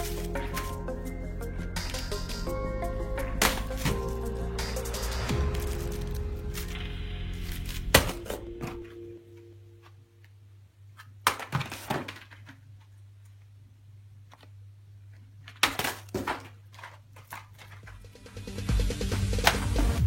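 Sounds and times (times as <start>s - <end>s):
music: 0.0s - 9.8s, 17.8s - 20.0s.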